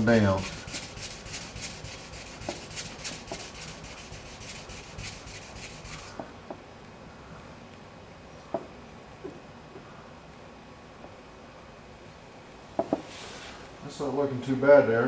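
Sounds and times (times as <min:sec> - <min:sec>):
sandpaper rubbing on paint: 0:00.0 - 0:06.2.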